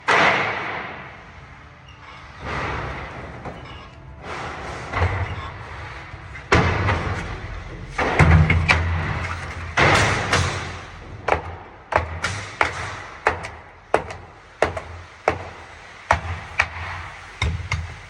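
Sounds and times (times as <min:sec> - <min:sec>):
heavy thuds on wooden pallets: 0:06.5 - 0:18.0.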